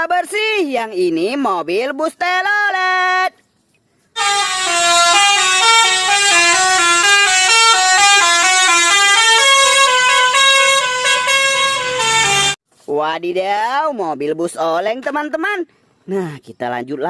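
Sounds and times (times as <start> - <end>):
multi-tone bus horn playing a tune: 4.2 - 12.6.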